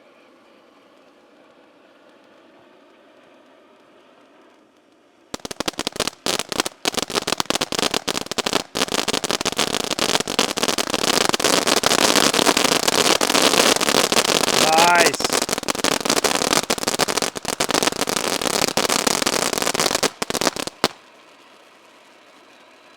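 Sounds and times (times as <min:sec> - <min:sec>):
firework fountain crackling: 0:05.4 - 0:22.9.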